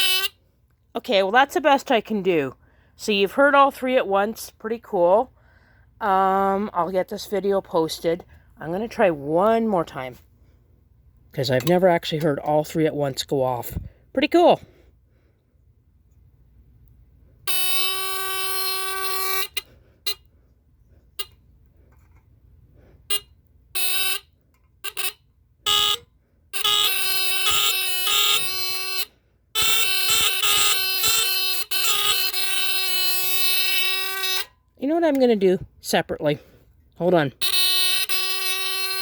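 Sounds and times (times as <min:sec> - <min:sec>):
fire alarm horns buzzing: 0:00.0 - 0:00.5, 0:17.4 - 0:20.3, 0:23.0 - 0:34.7, 0:37.3 - 0:39.0.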